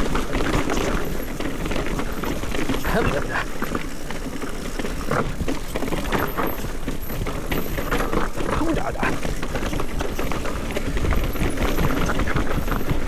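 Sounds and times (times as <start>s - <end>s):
bike frame and chain rattling: 0.0s - 13.0s
bike tyres on dirt and rock: 0.0s - 13.0s
wind rumble on microphone: 5.1s - 13.0s.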